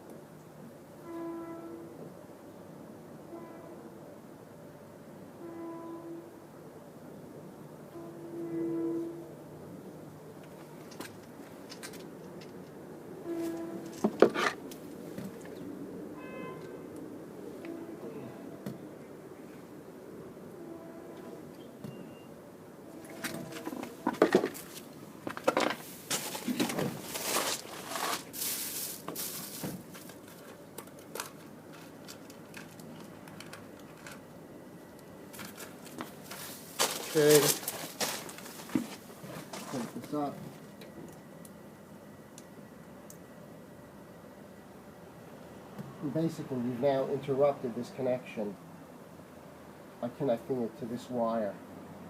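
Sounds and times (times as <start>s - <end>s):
brief pitched tone: 21.6s - 22.3s
hands rustling and scraping tools: 23.0s - 34.3s, 35.3s - 40.2s
metal parts clicking and clanking: 29.2s - 34.3s.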